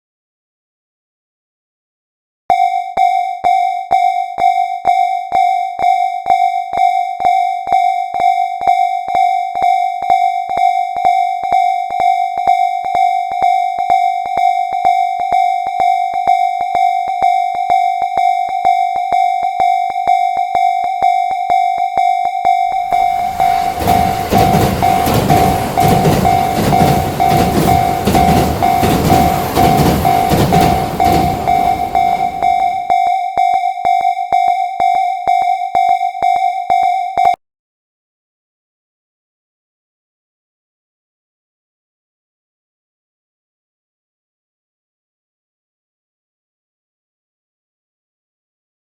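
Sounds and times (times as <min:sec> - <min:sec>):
railroad crossing bell ringing: 0:02.6 - 0:37.4
train rumbling and clattering: 0:22.8 - 0:32.9.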